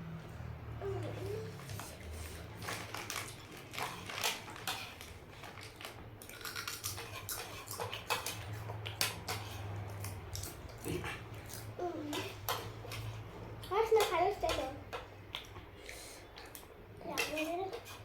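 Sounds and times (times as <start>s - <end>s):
food crunching and utensil clicks: 1.5s - 15.7s.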